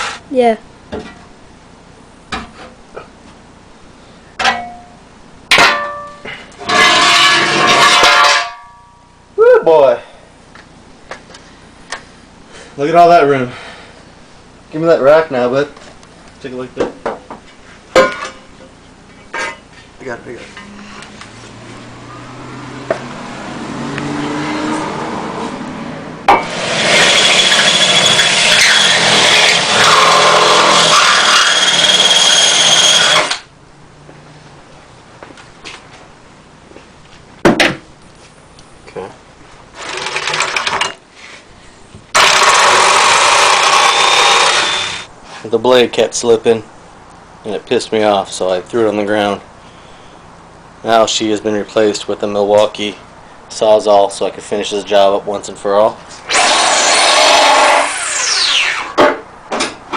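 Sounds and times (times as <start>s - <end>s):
power saw cutting sheet metal: 0.0s - 0.3s, 6.6s - 8.5s, 26.2s - 33.5s, 42.1s - 45.1s, 56.2s - 59.0s
metal clanging: 4.4s - 9.0s, 18.0s - 18.7s.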